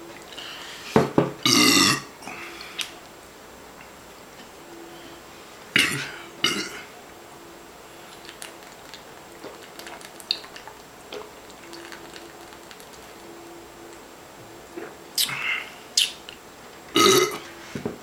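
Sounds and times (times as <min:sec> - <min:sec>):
man burping: 0:01.4 - 0:02.4, 0:05.8 - 0:06.9, 0:17.0 - 0:17.4.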